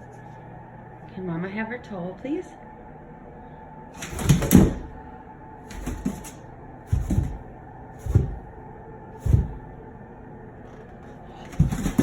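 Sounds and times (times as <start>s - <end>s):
dog scuffling with towel: 5.7s - 7.4s, 11.5s - 12.0s.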